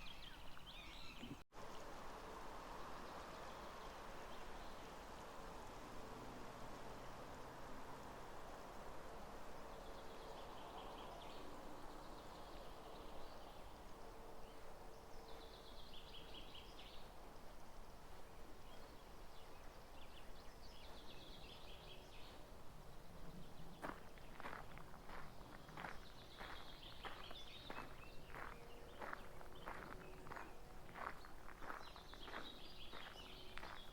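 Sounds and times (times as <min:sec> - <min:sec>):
footsteps on gravel: 0:23.4 - 0:33.9.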